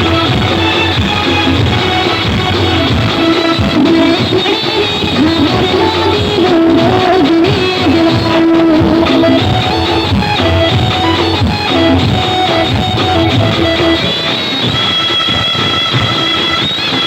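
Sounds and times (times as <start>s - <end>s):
guitar instrumental music: 0.0s - 17.0s
higher held melody line: 0.0s - 17.0s.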